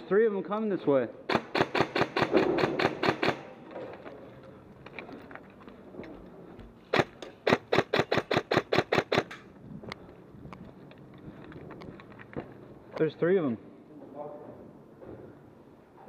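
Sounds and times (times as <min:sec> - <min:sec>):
airsoft rifle rapid firing: 0:01.3 - 0:03.6, 0:06.9 - 0:09.3.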